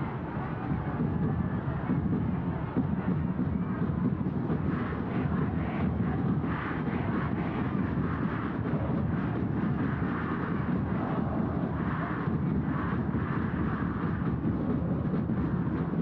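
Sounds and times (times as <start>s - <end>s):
stadium crowd roaring: 0.0s - 16.0s.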